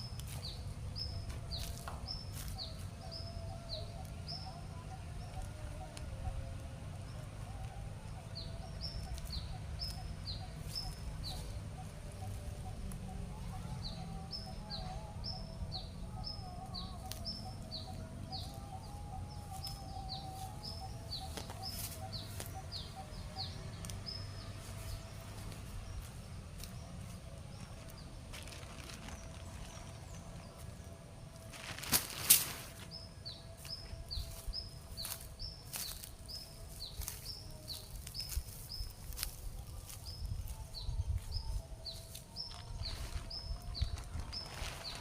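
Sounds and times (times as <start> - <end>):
steady low rumble: 0.0 - 31.9
bird chirping high: 0.0 - 45.0
lower wavering bird call: 0.7 - 45.0.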